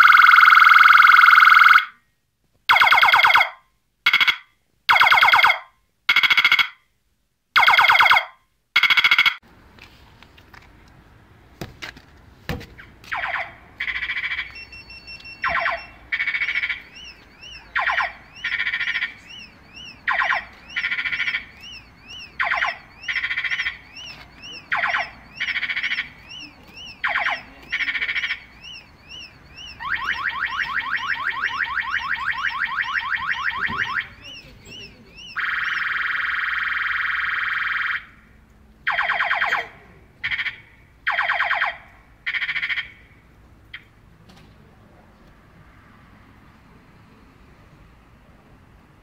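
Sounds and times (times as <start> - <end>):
electronic siren blasts: 0.0 - 2.0, 2.7 - 6.8, 7.6 - 9.4, 13.1 - 38.2, 38.9 - 43.0.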